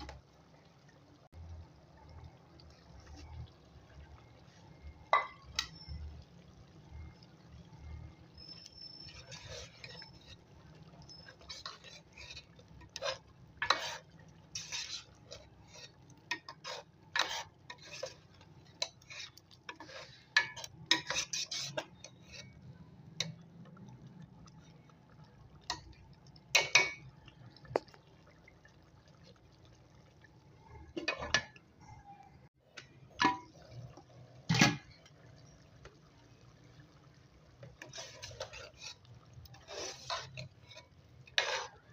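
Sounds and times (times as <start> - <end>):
metal utensils clinking on pots: 5.0 - 6.0, 8.5 - 22.6, 25.6 - 27.1, 30.9 - 31.6, 32.7 - 35.1, 37.6 - 41.9.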